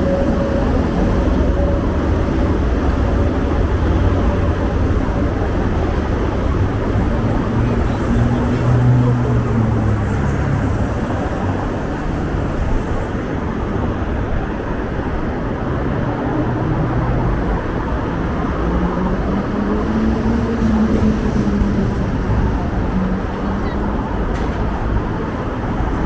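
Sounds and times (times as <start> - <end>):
low engine hum: 0.0 - 13.1
vehicles passing: 0.0 - 13.2.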